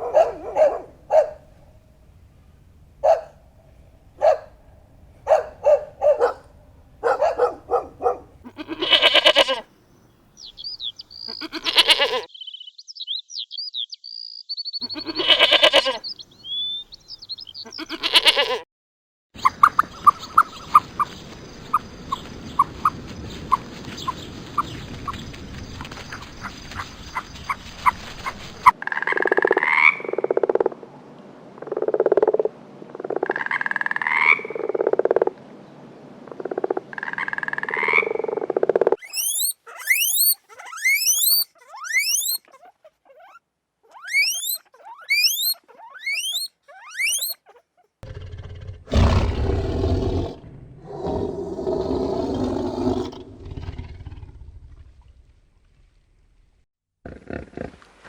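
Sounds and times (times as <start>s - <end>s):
repeated animal calls: 7.0s - 9.7s, 10.5s - 12.3s, 14.2s - 16.9s, 17.6s - 18.6s, 33.1s - 35.3s, 36.4s - 54.2s
quick high rising chirps: 39.0s - 42.5s, 43.3s - 47.4s
deep long rough call: 48.0s - 55.3s.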